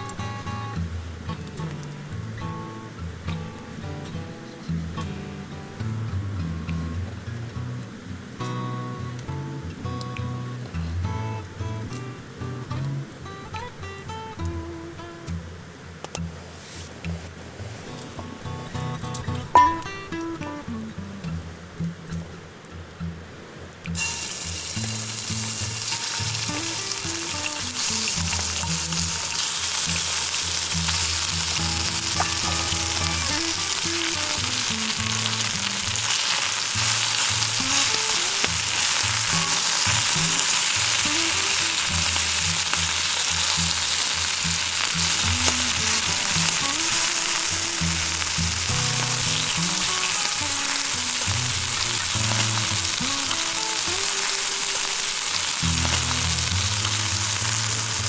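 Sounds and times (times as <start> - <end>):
food sizzling in a pan: 19.5 - 21.0, 24.0 - 58.0.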